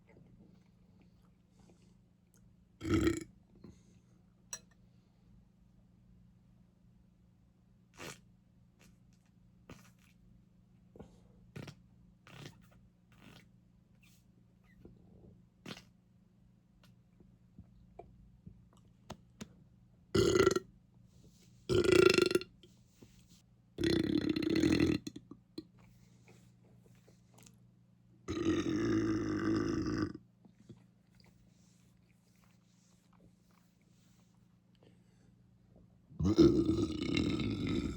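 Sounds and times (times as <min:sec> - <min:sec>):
person belching: 0:02.8 - 0:03.3, 0:20.2 - 0:20.6, 0:21.7 - 0:22.5, 0:23.8 - 0:25.4, 0:28.3 - 0:30.2, 0:36.2 - 0:37.9.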